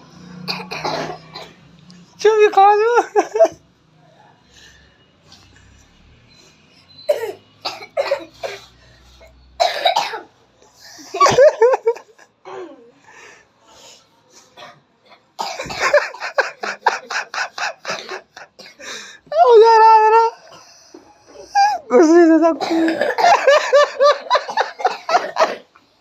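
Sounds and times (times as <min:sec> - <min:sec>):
children coughing: 0:00.4 - 0:01.6, 0:07.1 - 0:08.7, 0:09.6 - 0:10.4, 0:14.5 - 0:18.8, 0:22.6 - 0:25.8.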